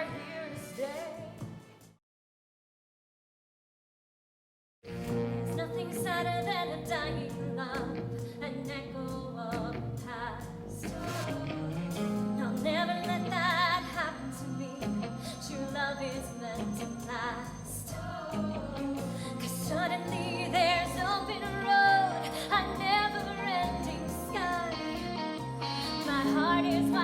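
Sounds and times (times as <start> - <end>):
instrumental accompaniment: 4.9 - 27.0
singing with wide vibrato: 5.4 - 27.0.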